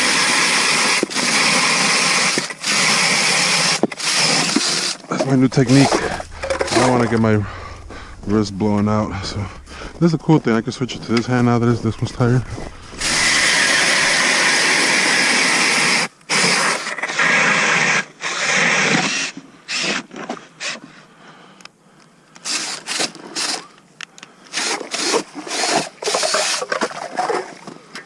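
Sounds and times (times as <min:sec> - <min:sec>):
drill grinding through ice: 0:00.0 - 0:07.2, 0:12.2 - 0:20.1, 0:22.4 - 0:23.7, 0:24.5 - 0:27.4.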